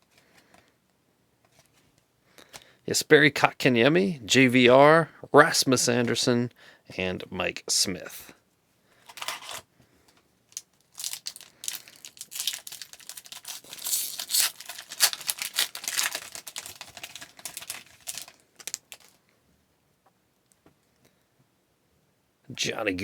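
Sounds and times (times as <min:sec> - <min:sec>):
foil wrapper torn and crinkled: 0:09.1 - 0:09.6, 0:10.5 - 0:19.2.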